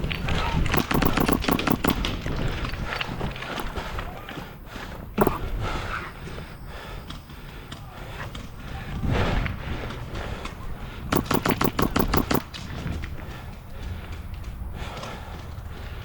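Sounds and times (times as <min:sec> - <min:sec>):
airsoft rifle full-auto burst: 0:00.7 - 0:02.3, 0:05.2 - 0:05.5, 0:11.1 - 0:12.6.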